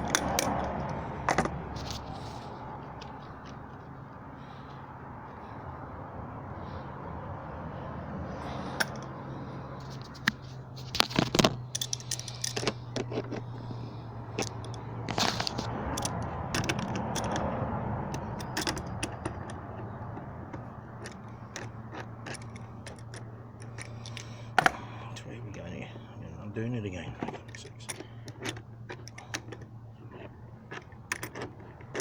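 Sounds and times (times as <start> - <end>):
steady low hum: 0.0 - 32.0
metal tools clinking and scraping: 9.8 - 17.5, 18.2 - 25.2.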